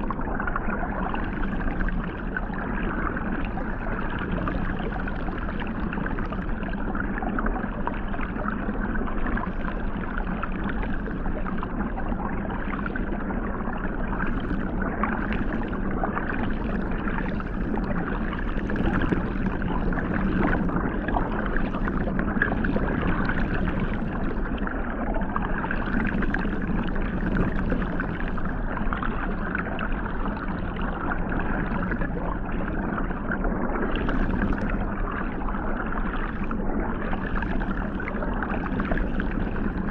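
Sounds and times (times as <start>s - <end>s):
water jets churning underwater: 10.2s - 39.9s.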